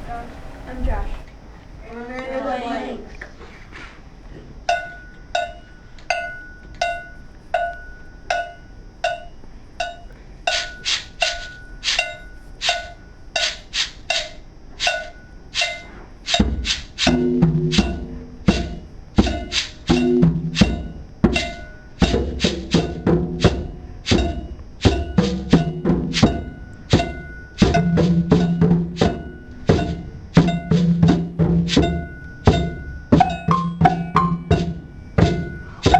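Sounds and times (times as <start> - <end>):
woody drum clicks: 16.3 - 35.9
deep drum hits: 16.5 - 35.9.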